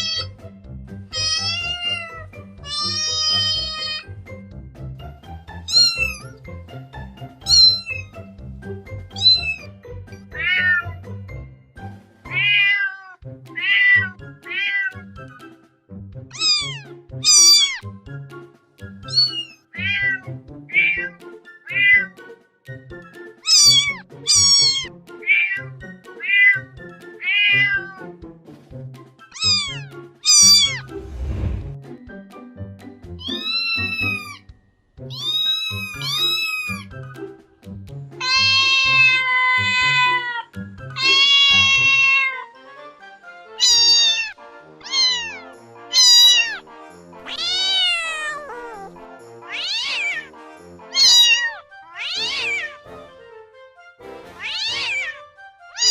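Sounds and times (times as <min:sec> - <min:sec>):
kitten meowing: 0:00.0 - 0:00.3, 0:01.1 - 0:04.1, 0:05.7 - 0:06.4, 0:07.4 - 0:08.1, 0:09.1 - 0:09.7, 0:10.3 - 0:11.0, 0:12.3 - 0:15.0, 0:16.3 - 0:17.8, 0:19.1 - 0:22.1, 0:23.4 - 0:28.0, 0:29.4 - 0:30.9, 0:33.2 - 0:34.5, 0:35.1 - 0:36.9, 0:38.2 - 0:42.5, 0:43.6 - 0:46.6, 0:47.3 - 0:48.9, 0:49.5 - 0:50.3, 0:50.9 - 0:52.8, 0:54.4 - 0:55.2
background music: 0:00.0 - 0:55.9.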